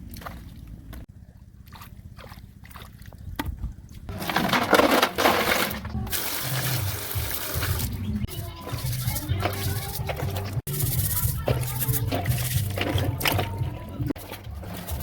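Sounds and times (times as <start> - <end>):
water splashing and pouring: 5.4 - 8.1, 11.9 - 15.0.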